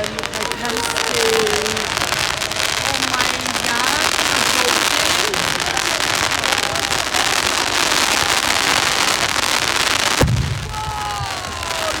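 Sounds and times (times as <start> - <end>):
fireworks crackling: 0.0 - 12.0
deep firework bang: 5.6 - 12.0.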